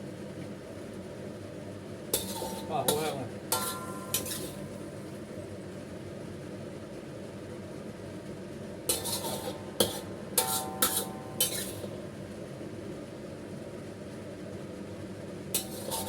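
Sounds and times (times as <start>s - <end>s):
steady low hum: 0.0s - 16.0s
metal utensil clanking on cookware: 2.2s - 4.9s, 8.9s - 12.1s, 15.6s - 16.0s.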